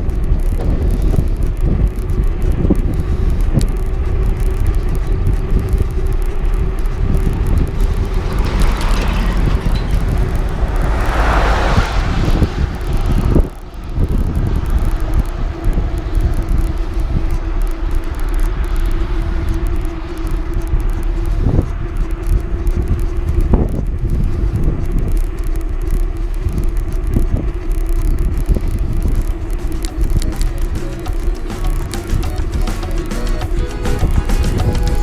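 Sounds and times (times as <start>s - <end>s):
road vehicle running: 0.0s - 35.0s.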